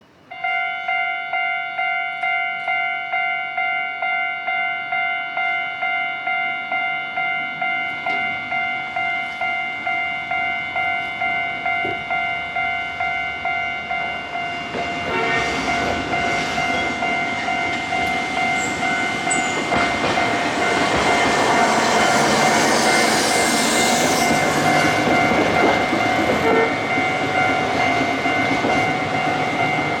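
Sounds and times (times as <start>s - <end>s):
railroad crossing bell clanging: 0.0s - 30.0s
tram wheels rumbling on rails: 6.8s - 30.0s.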